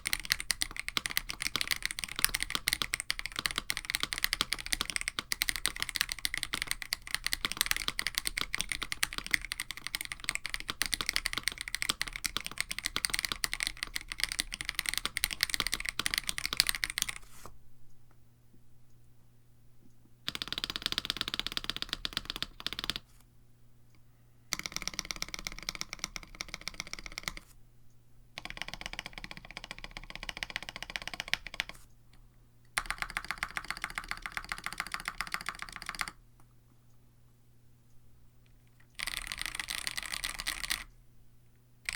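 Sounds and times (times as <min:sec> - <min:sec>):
mechanical keyboard typing: 0:00.0 - 0:17.2, 0:20.3 - 0:23.0, 0:24.5 - 0:27.4, 0:28.4 - 0:31.8, 0:32.8 - 0:36.2, 0:38.8 - 0:40.9.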